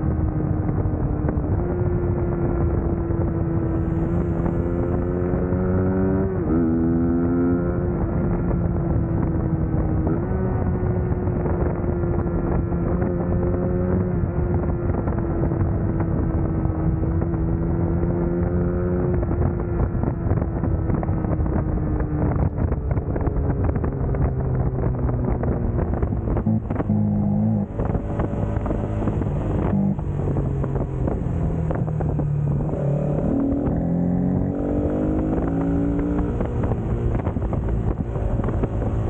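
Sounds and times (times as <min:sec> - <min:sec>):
motorcycle engine cruising: 0:00.0 - 0:39.0
wind rushing: 0:24.9 - 0:39.0.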